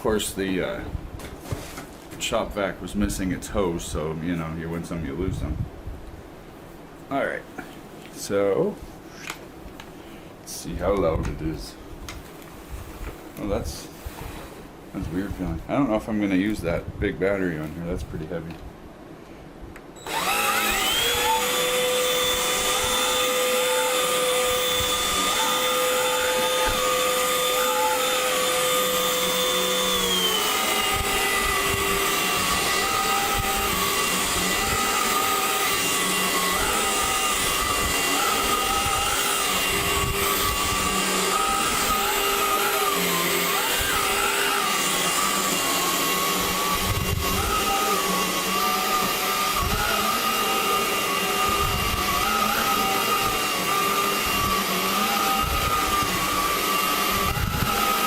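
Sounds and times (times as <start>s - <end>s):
stick vacuum running: 20.0s - 58.0s.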